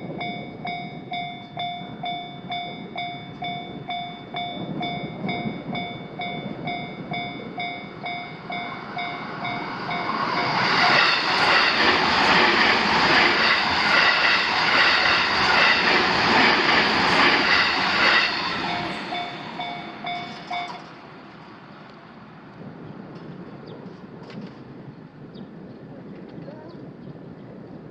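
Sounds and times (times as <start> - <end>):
train passing: 0.0 - 25.6
level crossing bell ringing: 18.6 - 20.9.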